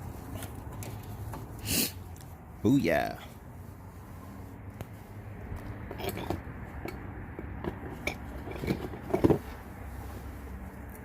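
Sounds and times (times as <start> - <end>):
metallic clinks of brake parts: 5.9 - 7.0.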